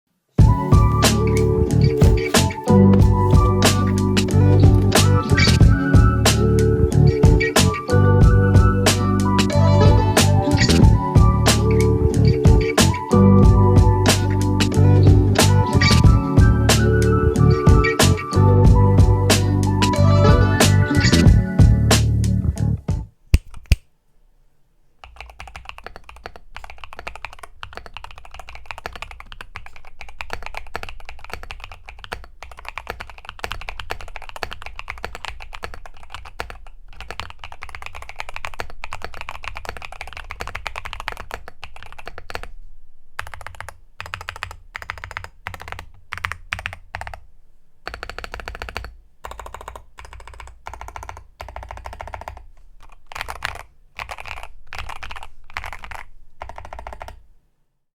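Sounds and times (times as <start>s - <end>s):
mechanical keyboard typing: 0.4s - 5.6s, 25.0s - 42.6s, 43.2s - 57.2s.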